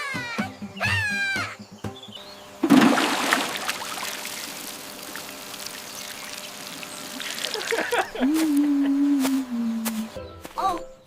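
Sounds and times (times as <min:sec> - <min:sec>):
water pouring: 0:02.6 - 0:07.8.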